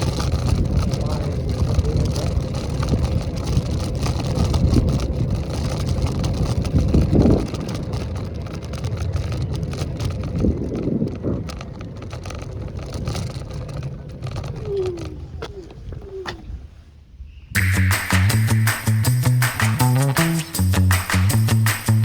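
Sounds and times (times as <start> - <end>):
wind buffeting microphone: 0.0 - 17.5
electric scooter rumble: 0.0 - 22.0.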